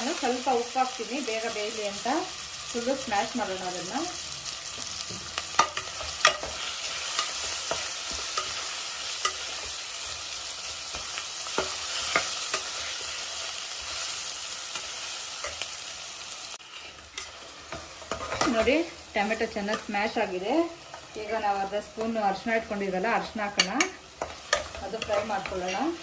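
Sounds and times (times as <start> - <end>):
vegetables sizzling in oil: 0.0 - 26.0
spatula scraping a pan: 4.7 - 15.7, 16.6 - 19.0, 23.5 - 26.0.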